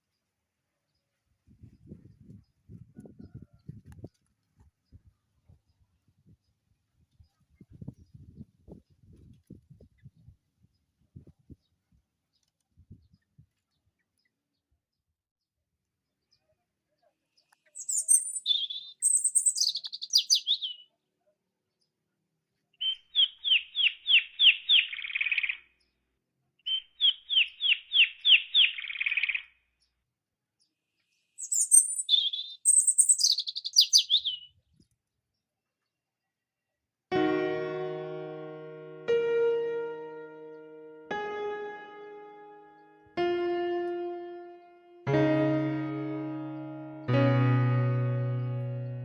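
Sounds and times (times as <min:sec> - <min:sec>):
songbird calling: 0:17.8 - 0:20.8, 0:31.4 - 0:34.5
piano music: 0:37.1 - 0:49.0.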